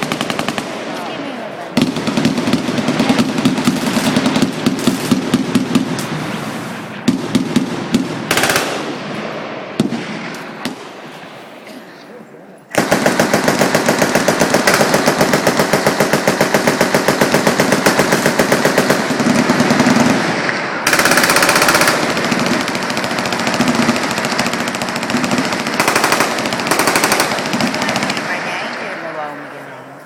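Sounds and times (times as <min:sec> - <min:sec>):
machine guns firing full-auto: 0:00.0 - 0:01.1, 0:01.8 - 0:06.0, 0:07.1 - 0:09.0, 0:12.8 - 0:28.8.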